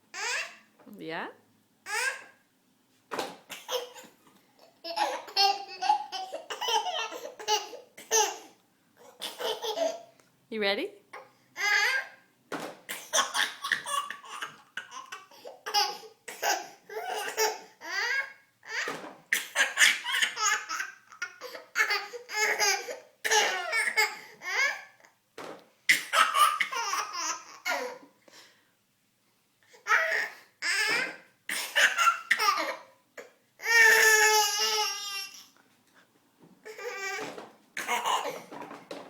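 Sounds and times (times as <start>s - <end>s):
toddler laughing: 4.8s - 10.1s, 36.7s - 38.5s.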